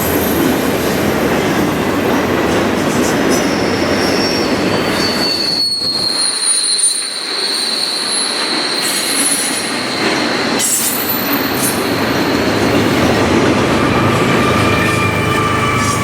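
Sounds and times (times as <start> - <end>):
train cars rumbling and clattering: 0.0 - 16.0
train wheels squealing on rails: 0.0 - 16.0.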